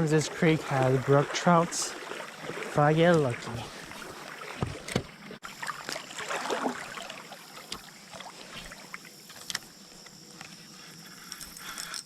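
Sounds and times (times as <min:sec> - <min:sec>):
creek water running: 0:00.0 - 0:11.0.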